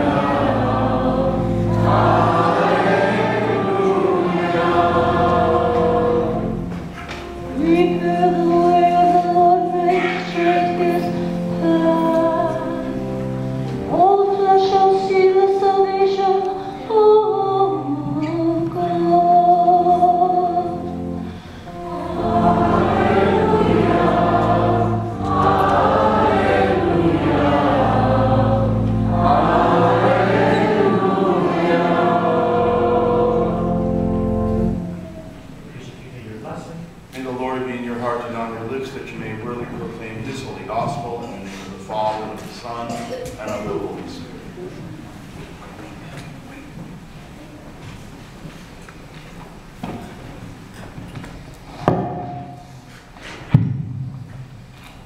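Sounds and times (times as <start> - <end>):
church choir singing: 0.0 - 35.6, 51.8 - 53.0
steady low accompaniment: 0.0 - 47.7.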